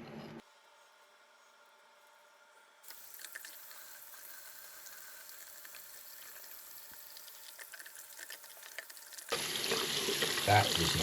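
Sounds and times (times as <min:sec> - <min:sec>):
faucet water running into drain: 0:02.9 - 0:11.0.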